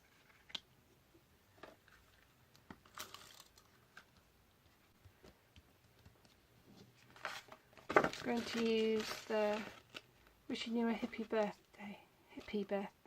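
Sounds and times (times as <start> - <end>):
paper rustling: 6.3 - 10.1.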